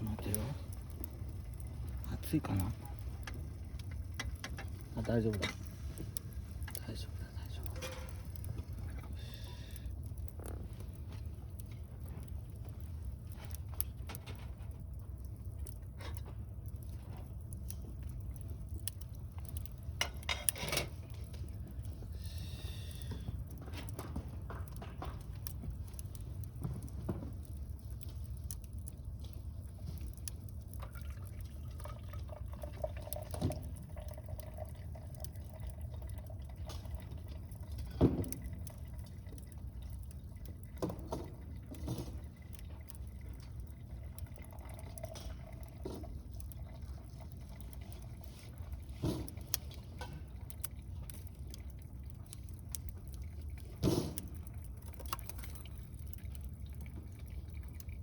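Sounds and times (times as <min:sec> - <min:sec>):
fire pops and crackles: 0:00.0 - 0:58.0
water bubbling in a kettle: 0:00.0 - 0:58.0
faint wavering hiss: 0:22.1 - 0:23.3.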